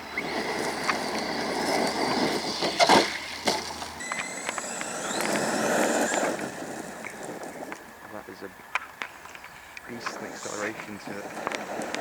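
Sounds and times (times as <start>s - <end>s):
electric motor whining: 0.0s - 8.1s.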